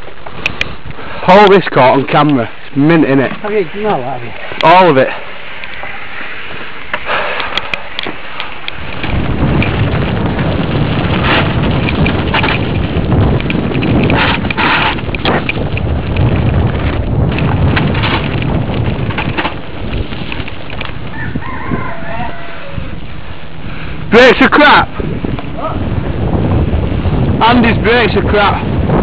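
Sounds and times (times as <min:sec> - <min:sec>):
wind and tyres rumbling: 0:00.0 - 0:29.0
bike rattling and knocking: 0:06.5 - 0:21.5.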